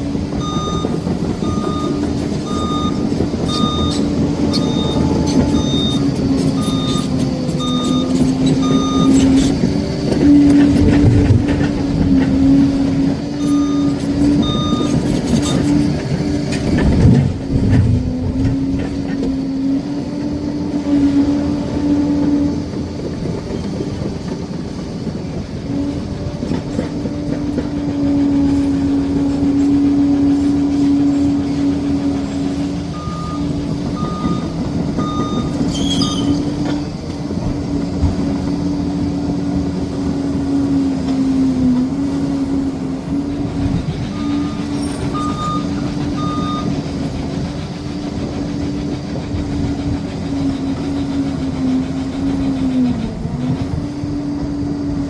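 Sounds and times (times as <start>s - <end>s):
diesel engine running: 0.0s - 55.0s
reversing alarm beeping: 0.2s - 25.1s, 28.1s - 37.0s, 44.0s - 47.2s.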